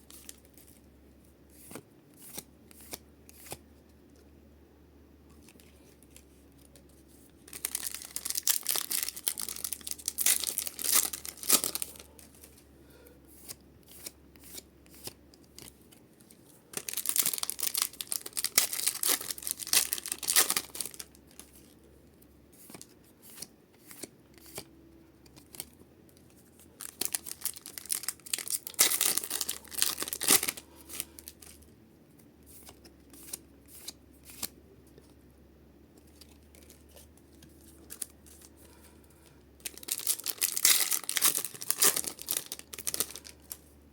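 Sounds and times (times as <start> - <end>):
cards handled clicks and rustles: 1.5 - 4.3, 5.3 - 12.7, 13.4 - 21.8, 22.6 - 35.2, 35.9 - 43.7
foil packs tearing and crinkling: 7.5 - 12.0, 16.8 - 21.2, 26.8 - 31.6, 39.6 - 43.6.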